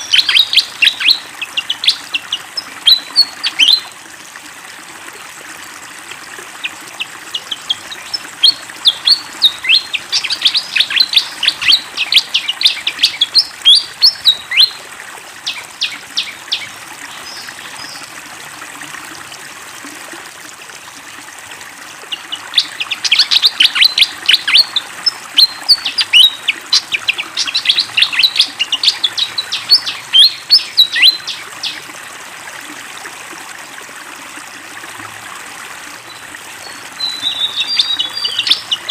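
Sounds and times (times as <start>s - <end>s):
bird singing rapid high chirps: 0.0s - 3.8s, 7.3s - 14.8s, 15.4s - 18.0s, 22.1s - 31.8s, 36.1s - 38.9s
flowing water: 0.0s - 38.9s.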